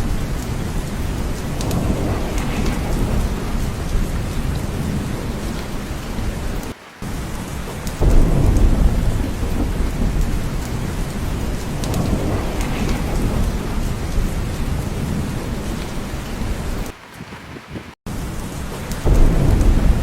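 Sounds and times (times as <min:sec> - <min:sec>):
heavy rain: 0:00.0 - 0:20.0
thunder rumbling: 0:00.0 - 0:20.0.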